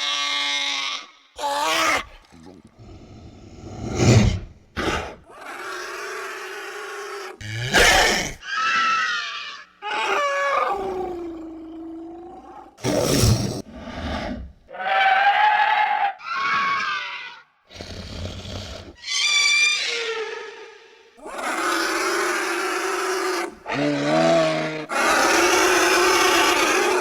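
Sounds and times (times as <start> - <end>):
monster creature roaring: 23.6 - 27.0.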